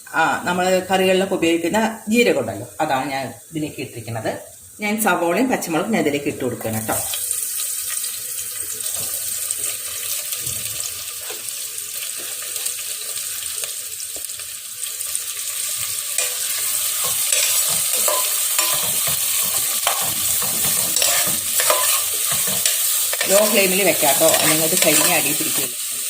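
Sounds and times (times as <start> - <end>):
onions sizzling in oil: 0.2 - 26.0
spoon scraping pan: 15.8 - 26.0.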